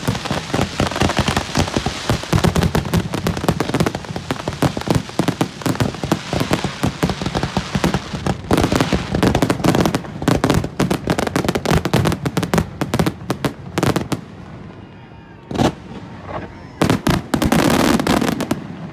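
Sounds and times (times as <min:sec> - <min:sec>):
loud firework bang: 0:15.4 - 0:18.7.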